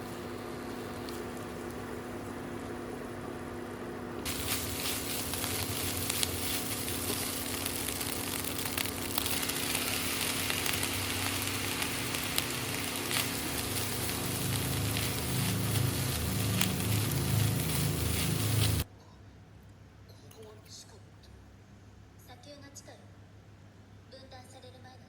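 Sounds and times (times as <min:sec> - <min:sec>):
steady hum: 0:00.0 - 0:19.1
food sizzling in a hot pan: 0:04.2 - 0:18.9.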